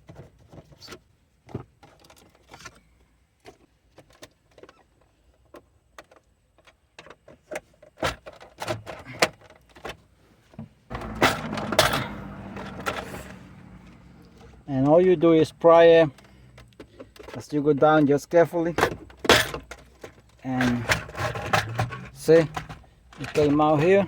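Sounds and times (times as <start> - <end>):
plastic scraping and rattling: 0.0 - 15.2, 16.0 - 24.0.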